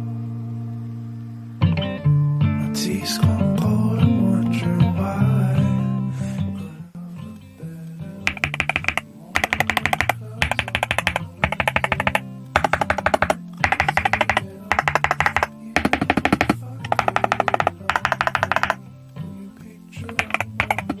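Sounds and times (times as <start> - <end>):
mechanical keyboard typing: 8.3 - 18.8, 20.1 - 21.0.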